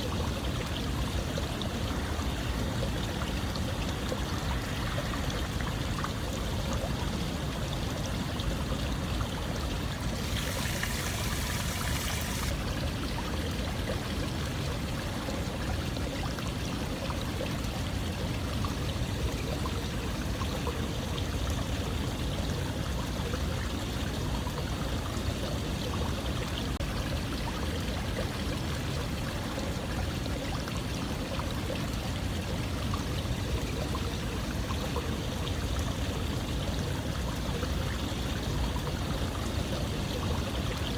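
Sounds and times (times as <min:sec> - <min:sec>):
running water: 0:00.0 - 0:40.9.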